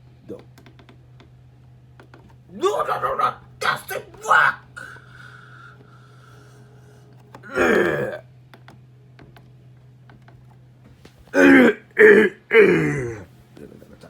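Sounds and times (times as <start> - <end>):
steady electrical hum: 0.0 - 14.0
person's short vocal sounds: 7.4 - 8.2, 11.4 - 13.3.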